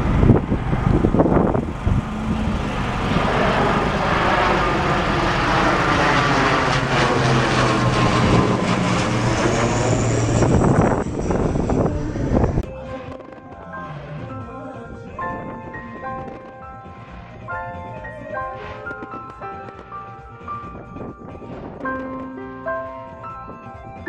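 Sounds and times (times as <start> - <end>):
motor engine hum passing by: 0.0 - 12.6.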